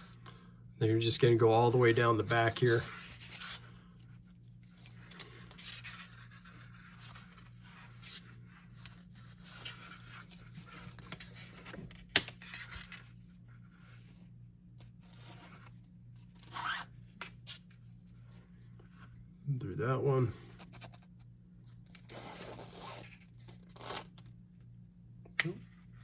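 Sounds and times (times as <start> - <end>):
strap rubbing and scraping: 1.2 - 3.8, 15.0 - 19.2, 21.9 - 24.3.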